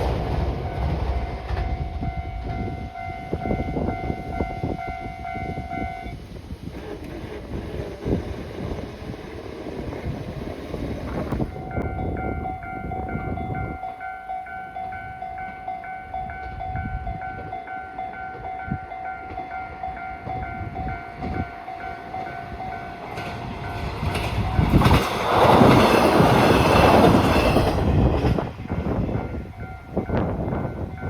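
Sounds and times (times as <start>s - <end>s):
train rushing and wheel clatter: 0.0s - 31.0s
level-crossing alarm bell ringing: 0.7s - 6.2s, 11.5s - 27.7s.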